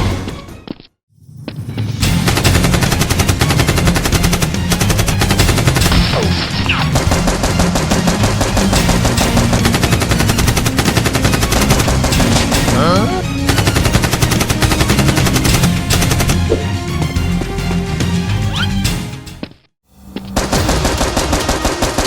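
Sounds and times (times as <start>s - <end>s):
rapid automatic gunfire: 2.2s - 6.1s, 6.8s - 12.8s, 13.5s - 16.4s, 20.4s - 22.0s.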